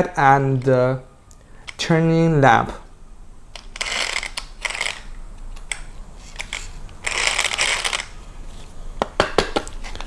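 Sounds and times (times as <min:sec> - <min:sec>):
plastic parts rustling and scraping: 0:03.7 - 0:08.8.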